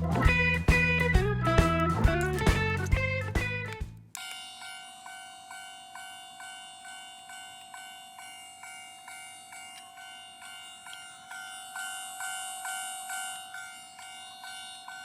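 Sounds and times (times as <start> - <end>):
toy crossing bell dinging: 4.1 - 15.0.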